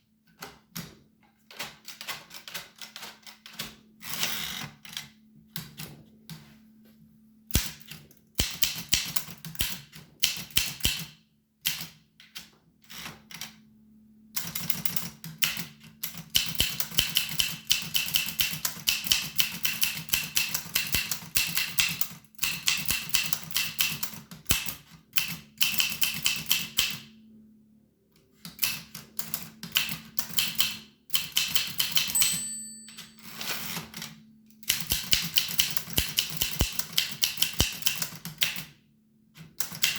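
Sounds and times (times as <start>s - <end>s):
typewriter keys clacking: 28.5s - 38.7s, 39.6s - 39.9s.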